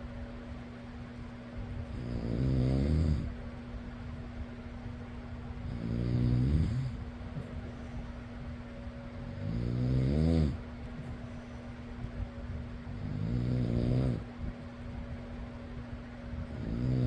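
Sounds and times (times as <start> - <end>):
electric fan humming: 0.0 - 17.0
person snoring: 1.9 - 3.4, 5.7 - 7.0, 9.4 - 10.6, 13.0 - 14.2, 16.6 - 17.0.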